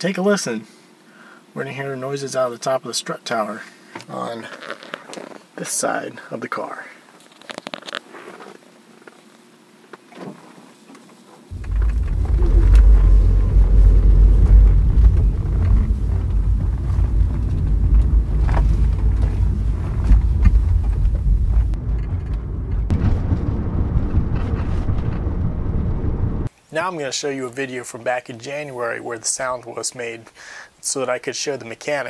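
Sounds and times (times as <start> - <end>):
low rumble of moving car: 11.5 - 26.5.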